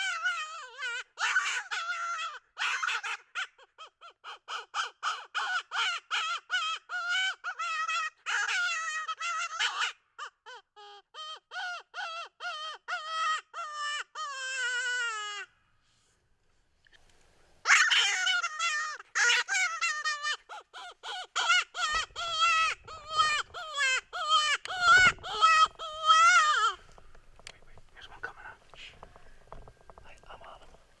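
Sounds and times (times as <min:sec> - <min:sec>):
predator call distress cries: 0:17.7 - 0:27.0.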